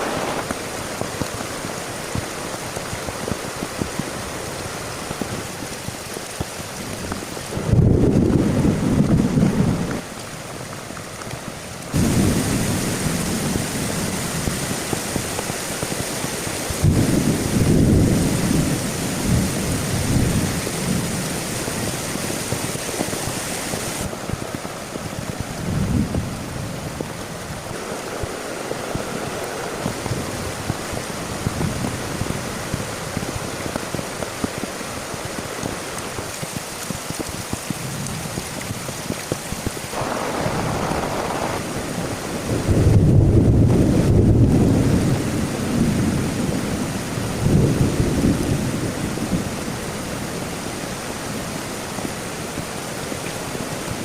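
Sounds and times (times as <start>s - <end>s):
heavy rain falling: 0.0s - 54.0s
rolling thunder: 7.5s - 10.0s, 11.9s - 21.5s, 39.9s - 49.6s.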